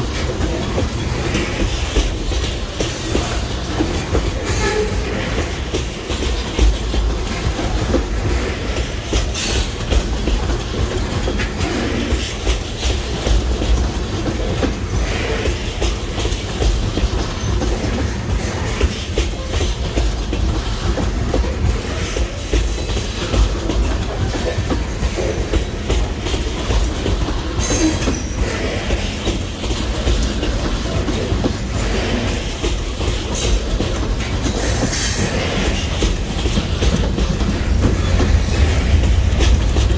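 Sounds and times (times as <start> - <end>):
train wheels rumbling on rails: 0.0 - 39.9
wheels clicking over rail joints: 0.0 - 39.9.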